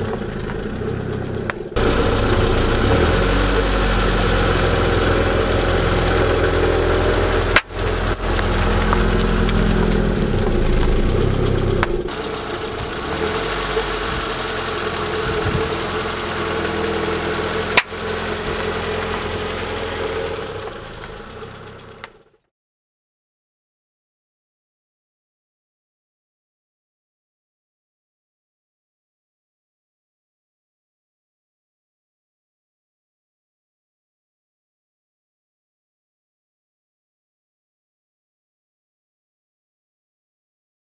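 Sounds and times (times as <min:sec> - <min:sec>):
car engine running: 0:00.0 - 0:22.4.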